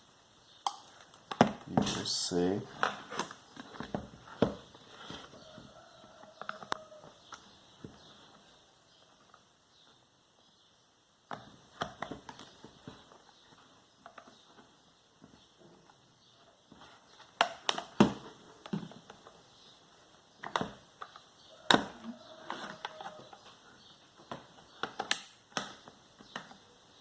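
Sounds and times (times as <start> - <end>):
plastic clicks and snaps: 0.6 - 1.6, 24.3 - 26.6.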